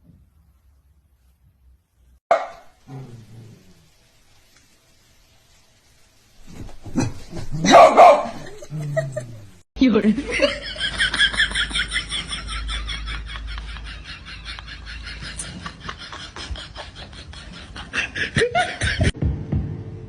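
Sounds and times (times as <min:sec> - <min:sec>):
rapid breathy laughter: 0:10.7 - 0:19.2.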